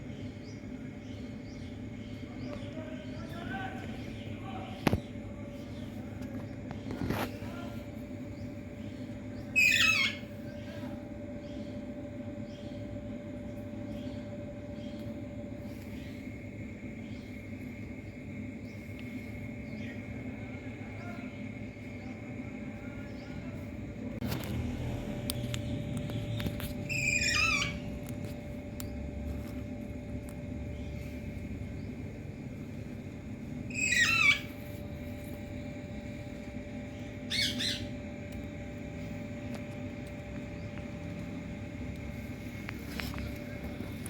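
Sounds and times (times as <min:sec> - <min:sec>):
low background hum: 0:00.0 - 0:44.0
parrot harsh calls: 0:09.5 - 0:10.4, 0:26.9 - 0:27.9, 0:33.7 - 0:34.6, 0:37.3 - 0:37.9.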